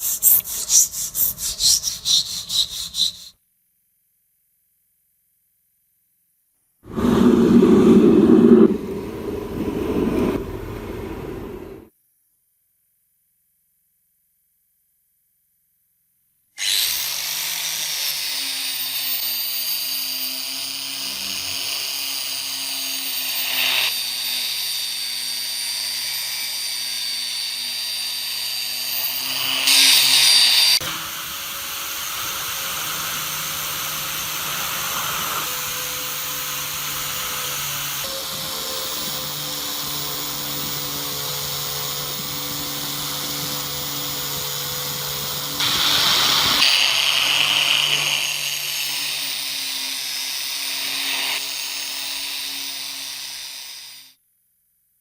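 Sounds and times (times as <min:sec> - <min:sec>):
power tool motor whine: 0:06.9 - 0:11.9, 0:16.6 - 0:54.1.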